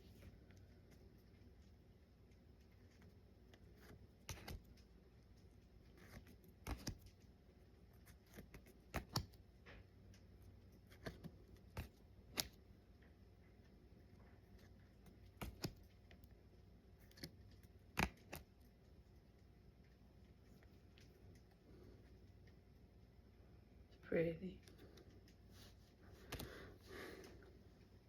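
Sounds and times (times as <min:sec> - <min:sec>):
trading cards flicked by hand: 0:03.8 - 0:04.8, 0:06.0 - 0:07.2, 0:08.1 - 0:09.4, 0:10.9 - 0:12.6, 0:15.3 - 0:15.9.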